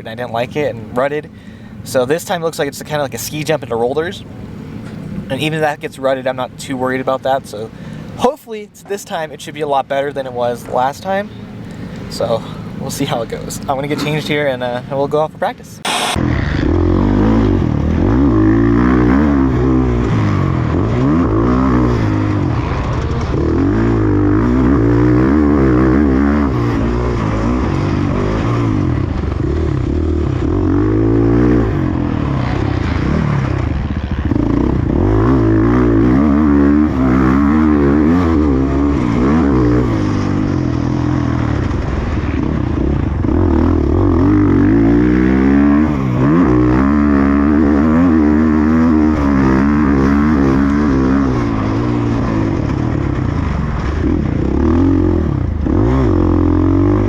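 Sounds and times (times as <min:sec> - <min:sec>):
motocross bike engine revving: 0:15.8 - 0:57.0.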